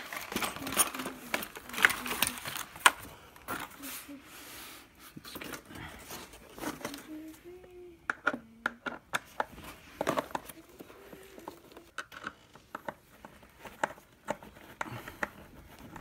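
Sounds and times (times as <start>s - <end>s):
packaging crinkling and clicking: 0.0s - 3.7s.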